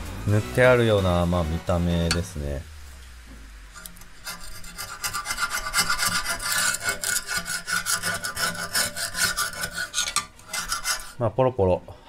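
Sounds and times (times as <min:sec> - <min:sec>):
hand scraping painted steel: 0:03.7 - 0:11.3.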